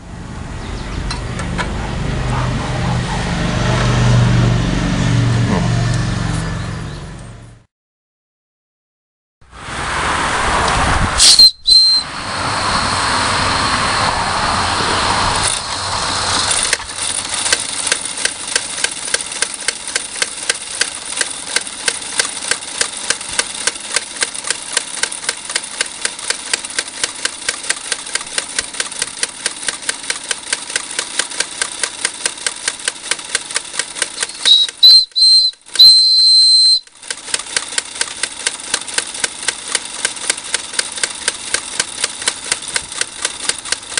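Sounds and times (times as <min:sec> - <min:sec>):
steam engine exhaust puffing: 0:11.1 - 0:35.9
steam whistle blast: 0:11.2 - 0:15.1, 0:34.5 - 0:36.9.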